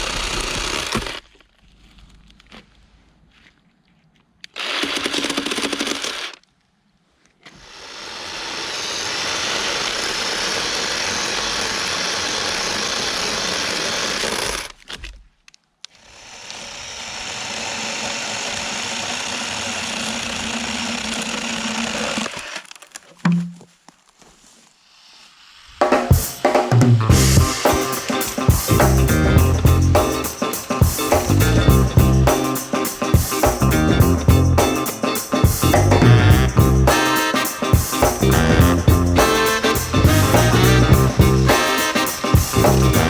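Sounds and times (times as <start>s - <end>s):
electric chainsaw running: 7.6s - 14.7s, 16.0s - 22.6s.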